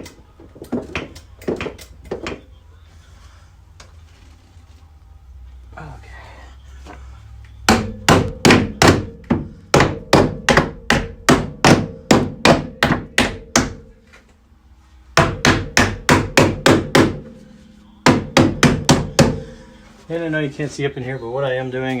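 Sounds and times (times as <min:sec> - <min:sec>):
hammer striking sheet metal: 0:07.7 - 0:14.0, 0:15.2 - 0:19.8.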